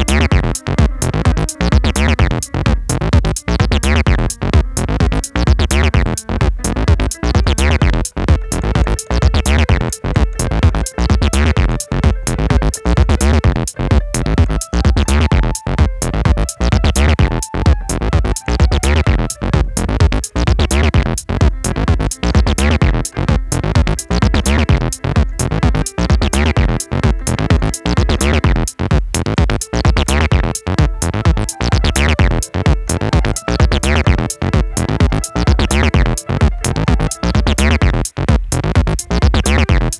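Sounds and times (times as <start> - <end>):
electronic music: 0.0 - 39.9.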